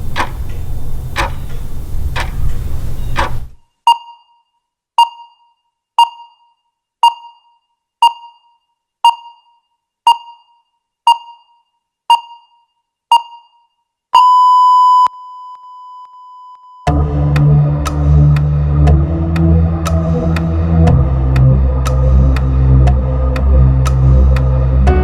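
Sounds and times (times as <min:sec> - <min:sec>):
countdown timer beeps: 0:03.0 - 0:18.0, 0:18.8 - 0:20.1.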